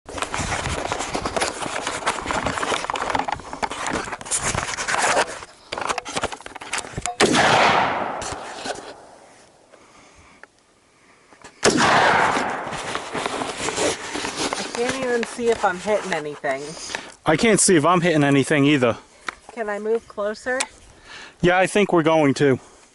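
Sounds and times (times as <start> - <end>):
rifle shots with echo: 7.2 - 9.2, 11.6 - 12.7.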